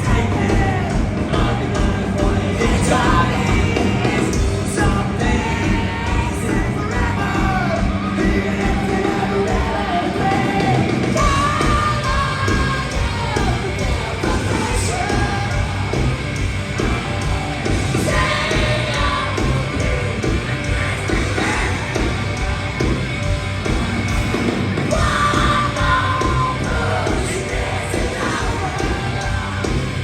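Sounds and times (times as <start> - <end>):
heavy rock band playing: 0.0 - 30.0
shouted vocals: 16.8 - 30.0.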